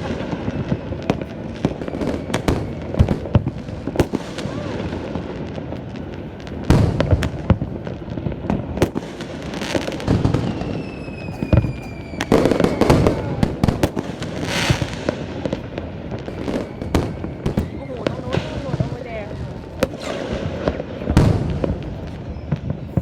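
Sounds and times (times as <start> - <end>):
firework bangs: 0.0 - 23.0
firework crackling: 0.0 - 23.0
firework whistle falling in pitch: 10.2 - 13.6.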